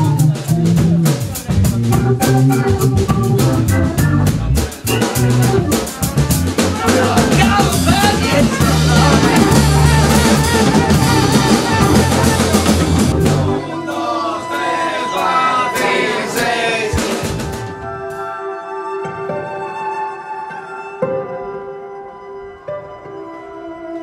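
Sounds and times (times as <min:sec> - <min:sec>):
drum kit playing quick hits: 0:00.0 - 0:18.2
held bass notes: 0:00.0 - 0:18.2.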